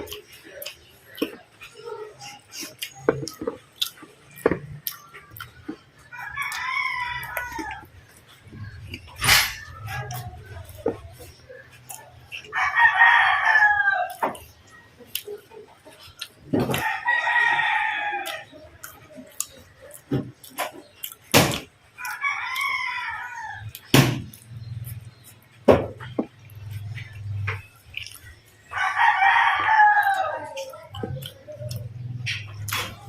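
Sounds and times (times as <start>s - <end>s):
rooster crowing: 6.1s - 7.9s, 12.5s - 14.2s, 16.7s - 18.4s, 22.0s - 23.7s, 28.7s - 30.6s.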